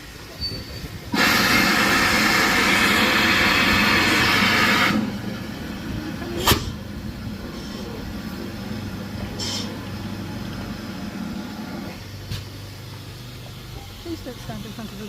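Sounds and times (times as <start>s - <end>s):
steam hissing: 0.0s - 15.0s
train coupling clank: 0.4s - 3.0s, 6.2s - 8.1s, 9.1s - 9.9s.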